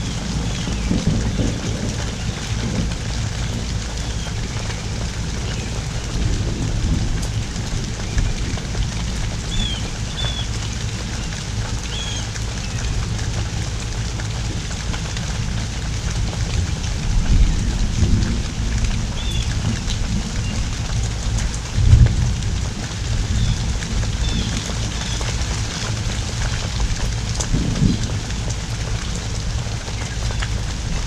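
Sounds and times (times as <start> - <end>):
heavy rain pouring: 0.0 - 31.0
low rumble of thunder: 0.0 - 31.0.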